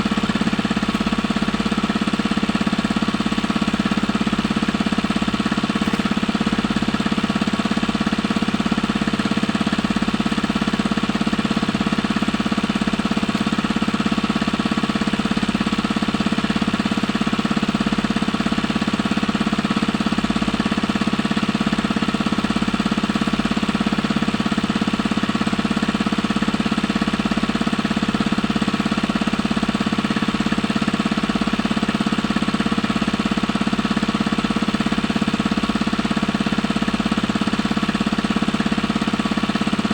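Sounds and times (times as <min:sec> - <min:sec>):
small engine running with knocking: 0:00.0 - 0:39.9.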